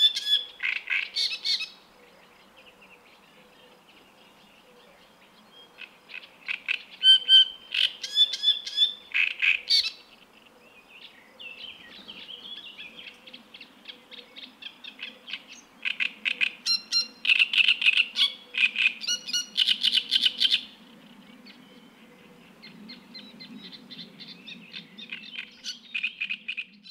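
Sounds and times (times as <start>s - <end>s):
bird croaking and chattering song: 0.0s - 1.8s, 5.6s - 10.1s, 11.4s - 20.7s, 21.6s - 26.9s.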